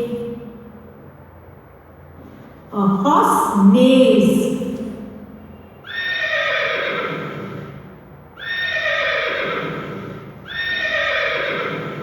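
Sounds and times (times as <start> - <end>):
horse neighing: 5.8 - 12.0.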